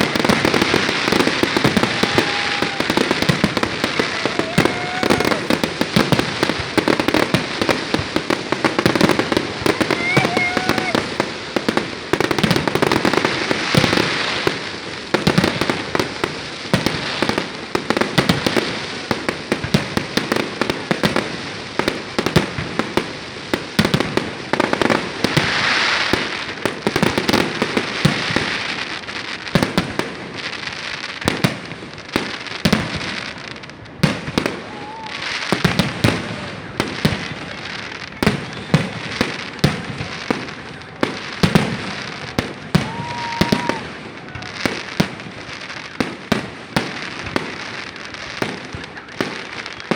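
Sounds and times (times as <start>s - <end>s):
fireworks bangs: 0.0s - 49.9s
fireworks crackling hiss: 0.0s - 49.9s.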